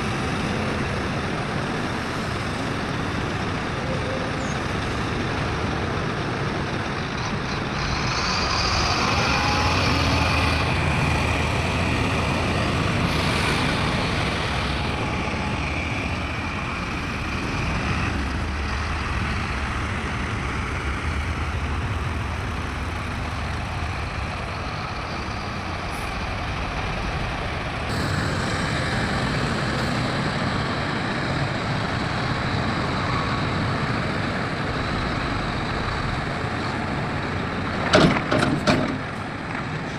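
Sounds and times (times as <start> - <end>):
diesel machinery engine rumble: 0.0 - 39.9.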